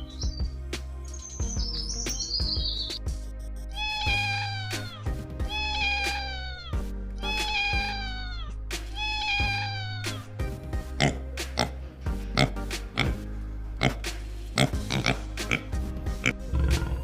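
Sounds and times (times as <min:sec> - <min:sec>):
background music: 0:00.0 - 0:17.0
cat meowing: 0:03.7 - 0:10.3.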